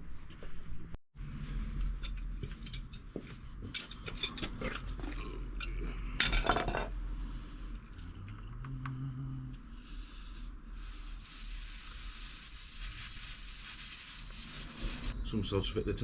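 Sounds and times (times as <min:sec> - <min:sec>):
metal tools clinking and clattering: 0:05.6 - 0:06.9.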